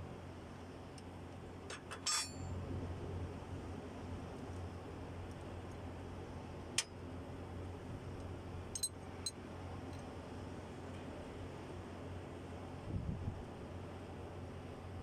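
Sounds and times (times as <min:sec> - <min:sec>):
steady low hum: 0:00.0 - 0:15.0
sharp metal clinks of tools: 0:01.8 - 0:02.5, 0:08.8 - 0:09.0.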